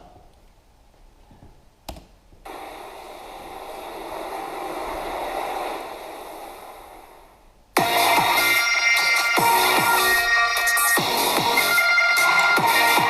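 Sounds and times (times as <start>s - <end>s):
hiss of noise: 2.4s - 11.3s.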